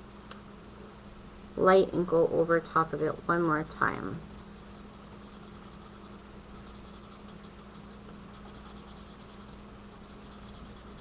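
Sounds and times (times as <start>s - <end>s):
marker scratching on card: 3.1s - 11.0s.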